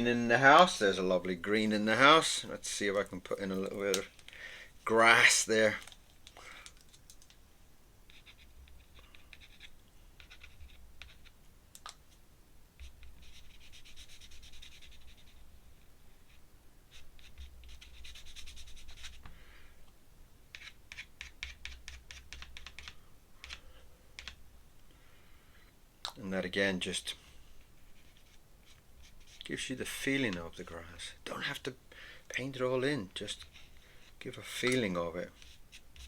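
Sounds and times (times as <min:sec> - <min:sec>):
paintbrush scratching over paper: 0:08.1 - 0:11.4, 0:12.8 - 0:19.2, 0:27.6 - 0:30.0, 0:33.2 - 0:34.4, 0:35.1 - 0:36.0.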